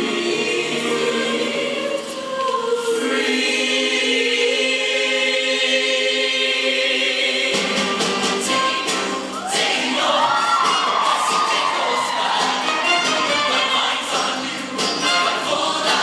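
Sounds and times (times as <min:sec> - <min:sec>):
choir singing in harmony: 0:00.0 - 0:16.0.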